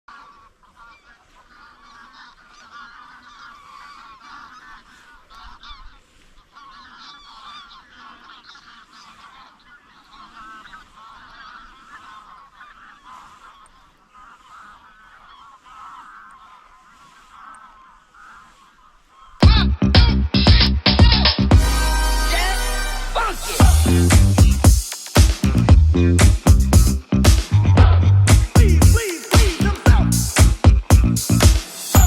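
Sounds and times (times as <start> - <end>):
geese honking: 0.1 - 19.4, 21.5 - 26.1.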